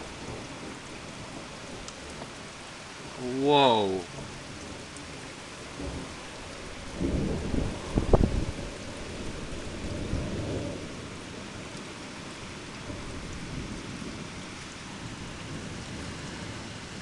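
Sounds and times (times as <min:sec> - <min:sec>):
rain hissing: 0:00.0 - 0:17.0
thunder rumbling: 0:03.0 - 0:11.8.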